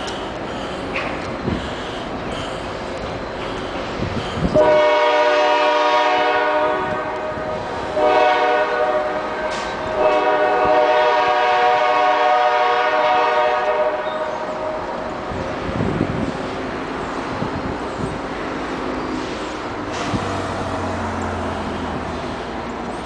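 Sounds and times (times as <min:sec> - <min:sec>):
locomotive air horn blasts: 0:04.5 - 0:14.7.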